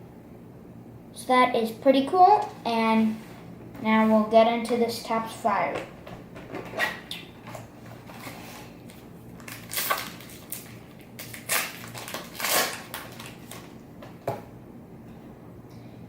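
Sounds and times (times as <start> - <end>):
packaging crinkling and tearing: 8.0 - 13.8.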